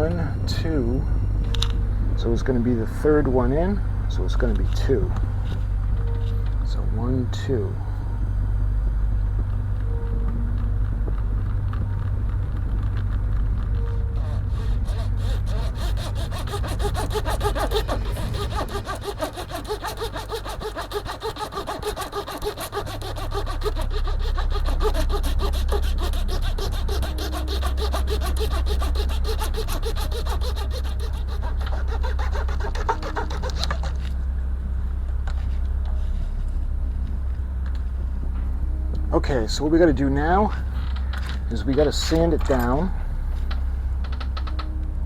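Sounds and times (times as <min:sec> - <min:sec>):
steady low hum: 0:00.0 - 0:45.0
hand saw cutting wood: 0:14.0 - 0:34.1.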